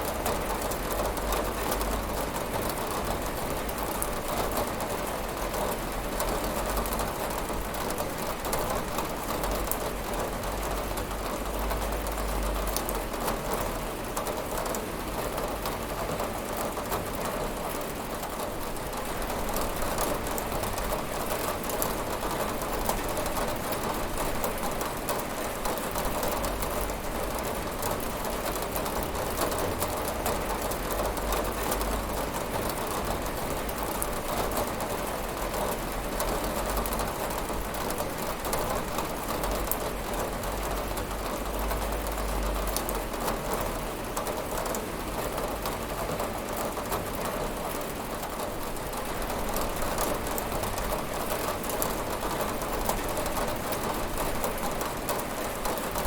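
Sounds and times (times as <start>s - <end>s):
rain on a window pane: 0.0s - 56.0s.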